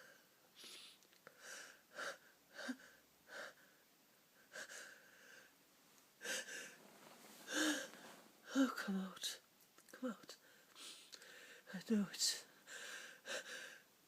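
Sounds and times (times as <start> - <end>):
woman gasping in-breaths: 7.4 - 8.1.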